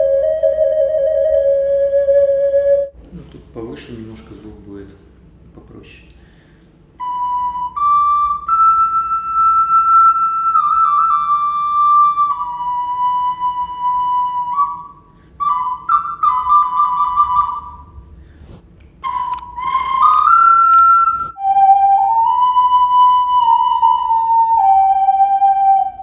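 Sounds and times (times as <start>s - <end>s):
clay whistle tone: 7.0s - 25.6s.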